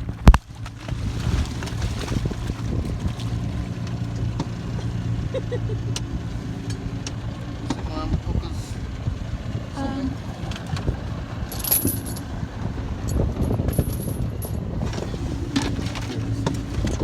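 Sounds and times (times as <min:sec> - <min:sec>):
boat motor idling: 0:00.0 - 0:17.0
metallic clinks and knocks: 0:11.5 - 0:12.3, 0:13.1 - 0:14.6.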